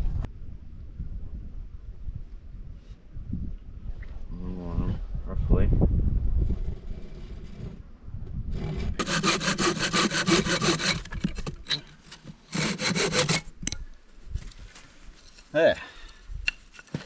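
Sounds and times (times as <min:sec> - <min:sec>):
hand saw cutting wood: 0:08.6 - 0:13.7.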